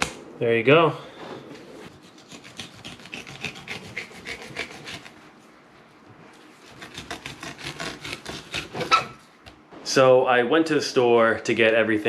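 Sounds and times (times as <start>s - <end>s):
knife sawing through fish: 1.9s - 5.2s, 6.5s - 9.3s.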